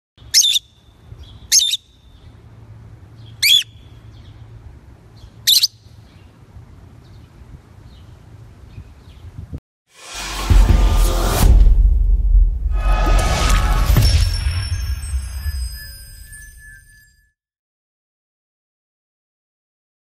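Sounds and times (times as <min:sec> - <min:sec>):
bird chirping high-pitched: 0:00.2 - 0:02.4, 0:03.2 - 0:04.4, 0:05.2 - 0:06.0.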